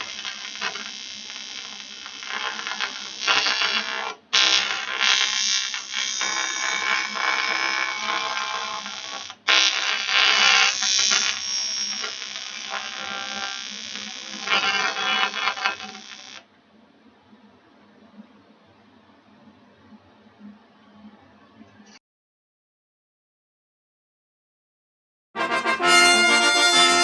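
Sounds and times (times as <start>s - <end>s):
welding arc buzzing: 0.0s - 16.4s.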